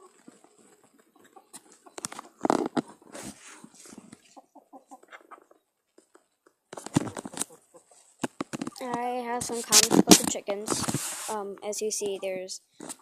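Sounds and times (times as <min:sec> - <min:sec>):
chickens clucking: 0:00.0 - 0:13.0
scuffling noise: 0:01.5 - 0:04.4, 0:06.7 - 0:11.4.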